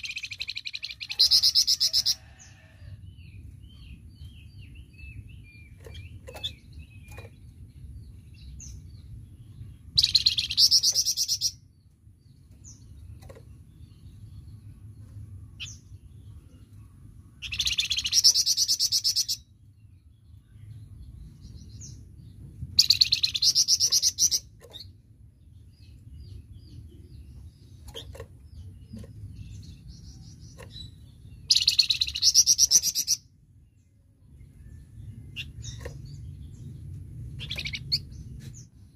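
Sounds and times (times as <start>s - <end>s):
songbird singing rapid bursts: 0.0s - 2.1s, 10.0s - 11.6s, 17.4s - 19.5s, 22.8s - 24.9s, 25.7s - 33.4s, 34.7s - 38.7s
low steady rumble: 2.4s - 38.9s.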